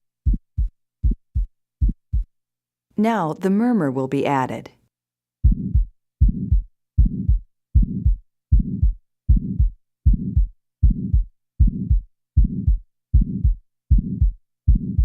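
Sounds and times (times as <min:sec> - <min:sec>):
heartbeat with murmur: 0:00.2 - 0:02.3, 0:05.4 - 0:15.0.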